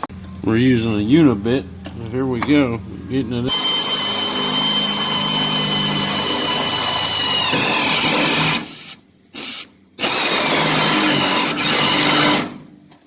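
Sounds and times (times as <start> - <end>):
power drill cutting steel: 3.5 - 8.9, 10.0 - 12.6.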